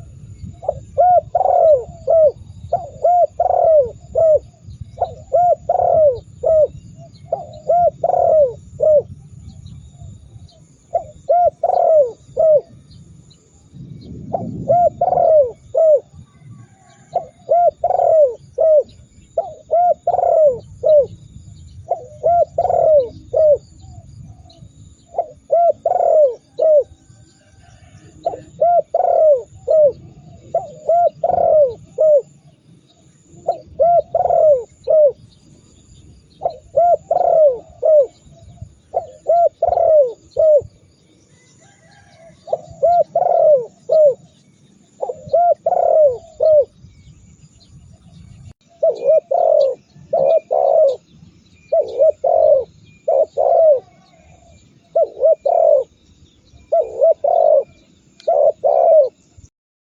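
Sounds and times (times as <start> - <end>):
dove cooing: 0.0 - 47.0, 48.1 - 59.5.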